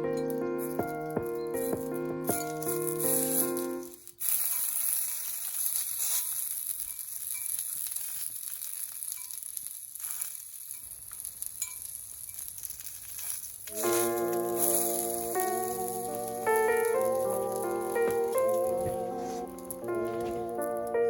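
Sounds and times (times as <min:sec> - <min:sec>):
music tune: 0:00.0 - 0:03.9, 0:13.7 - 0:21.0
food frying with sizzle: 0:00.3 - 0:21.0.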